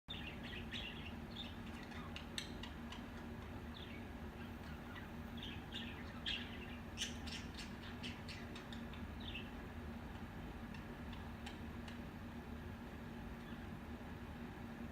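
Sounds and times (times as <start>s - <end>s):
budgerigars chirping: 0.1s - 9.6s
steady low hum: 0.1s - 14.9s.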